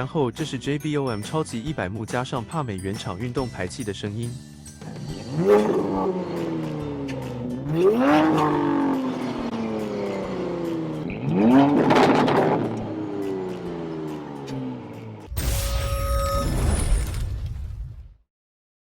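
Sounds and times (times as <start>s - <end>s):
car engine revving: 4.8s - 15.3s.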